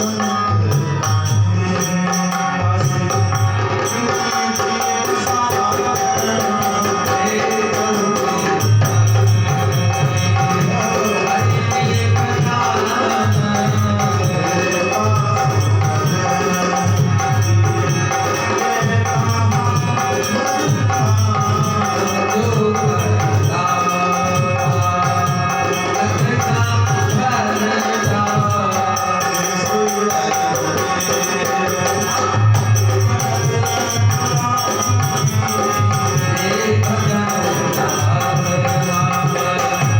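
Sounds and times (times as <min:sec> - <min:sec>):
hand drum rhythm: 0:00.0 - 0:39.9
jingling percussion: 0:00.0 - 0:39.9.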